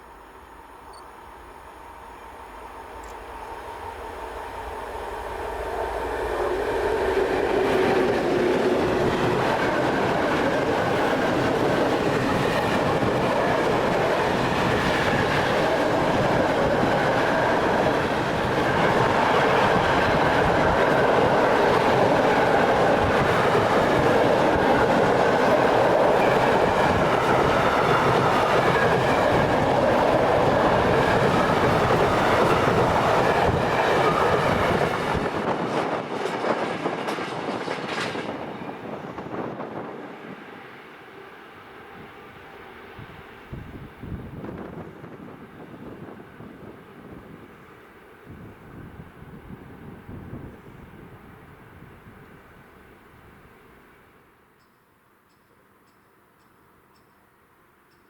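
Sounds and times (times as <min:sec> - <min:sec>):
train wheels clattering on rails: 0:05.7 - 0:39.4.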